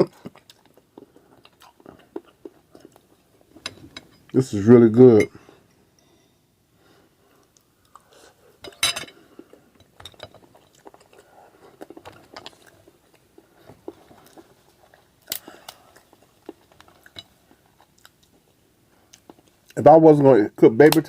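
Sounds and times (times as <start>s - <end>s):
chewing and small crunches: 0.0s - 4.4s, 9.1s - 19.8s
crab shells cracking: 15.2s - 18.4s.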